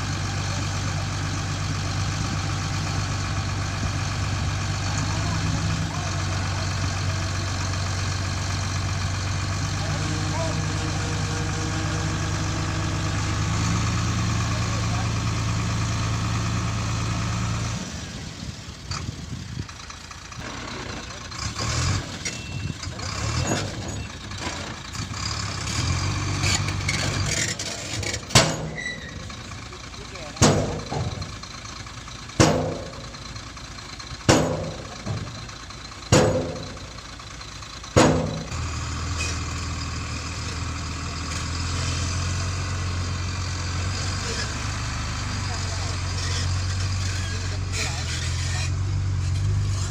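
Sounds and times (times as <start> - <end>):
engine idling: 0.0 - 49.9
knocks and rustling: 26.4 - 29.5, 30.4 - 31.4, 32.4 - 33.2, 34.3 - 35.5, 36.1 - 36.9, 38.0 - 38.6.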